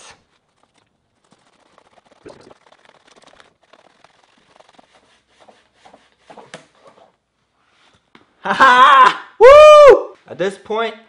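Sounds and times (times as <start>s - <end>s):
shoelace rubbing against plastic: 0.0s - 7.9s.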